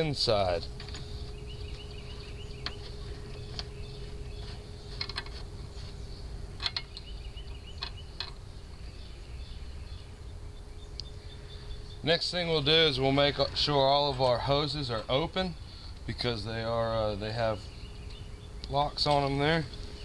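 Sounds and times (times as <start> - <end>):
insects chirping: 0.0 - 20.0
low outdoor hum: 0.0 - 20.0
hose fittings clicking: 0.6 - 1.8, 2.6 - 5.7, 6.6 - 7.1.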